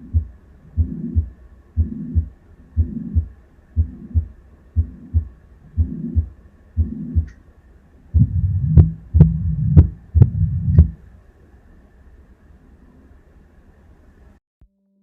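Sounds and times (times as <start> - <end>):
heart murmur: 0.0 - 7.4, 8.2 - 11.0
heartbeat through stethoscope: 0.0 - 7.4, 8.1 - 11.0.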